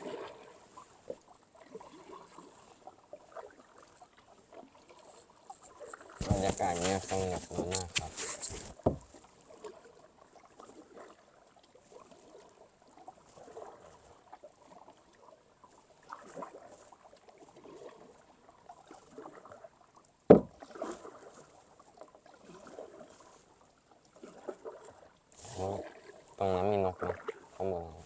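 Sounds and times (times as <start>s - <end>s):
paddle strokes swishing through water: 0.0s - 26.4s, 27.0s - 28.0s
sharp knock: 20.3s - 20.5s.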